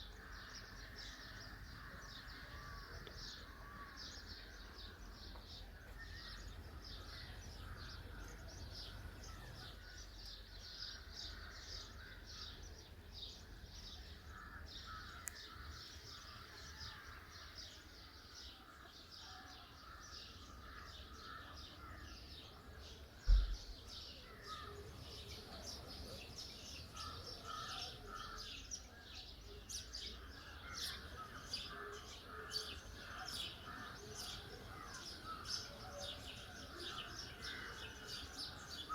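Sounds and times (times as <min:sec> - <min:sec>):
birds chirping: 0:00.0 - 0:38.9
low thump: 0:23.2 - 0:23.8.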